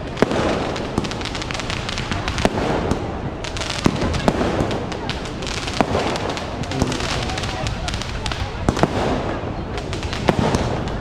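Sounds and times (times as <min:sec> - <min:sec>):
firecrackers banging: 0:00.0 - 0:11.0.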